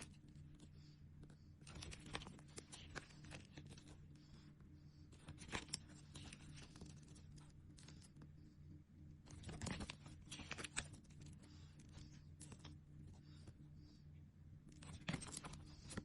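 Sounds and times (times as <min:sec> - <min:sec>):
steady low hum: 0:00.0 - 0:16.0
sticker packets crinkling: 0:01.6 - 0:03.9, 0:05.2 - 0:08.1, 0:09.3 - 0:11.3.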